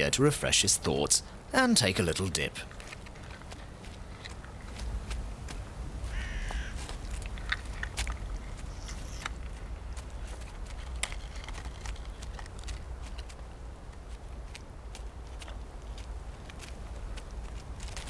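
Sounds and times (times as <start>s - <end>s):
steady low rumble: 0.0s - 18.0s.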